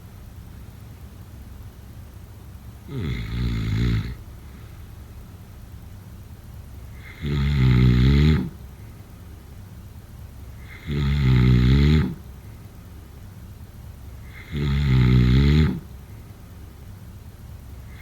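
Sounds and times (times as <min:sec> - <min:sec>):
low steady background noise: 0:00.0 - 0:18.0
person snoring: 0:02.9 - 0:04.2, 0:07.0 - 0:08.6, 0:10.6 - 0:12.2, 0:14.2 - 0:15.9.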